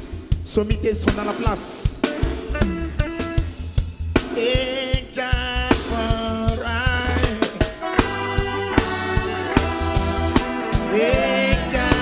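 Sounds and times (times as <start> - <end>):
reggae band playing: 0.0 - 12.0
person singing: 10.6 - 12.0.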